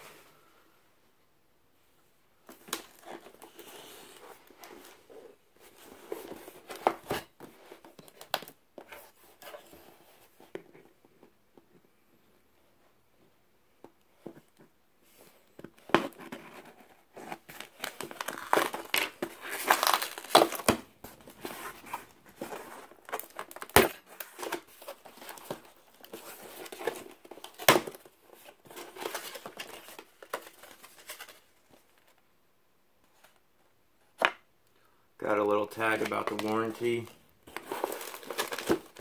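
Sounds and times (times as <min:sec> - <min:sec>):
wrapping crinkling and tearing: 0:17.6 - 0:20.7, 0:35.7 - 0:39.0.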